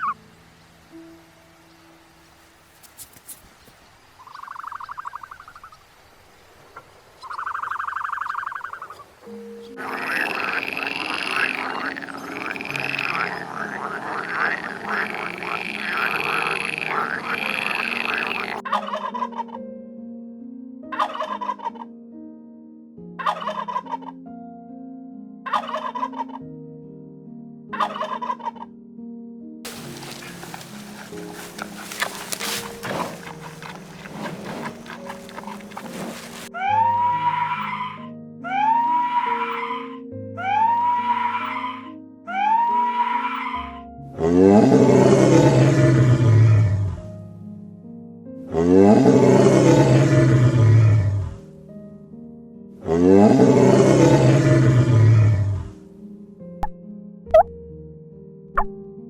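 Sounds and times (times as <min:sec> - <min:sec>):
low held background notes: 0:00.0 - 0:59.0
rough rustling noise: 0:02.2 - 0:03.9, 0:29.7 - 0:36.6
chattering animal calls: 0:07.2 - 0:09.1, 0:09.7 - 0:19.4, 0:29.7 - 0:41.8
background music: 0:09.2 - 0:59.0.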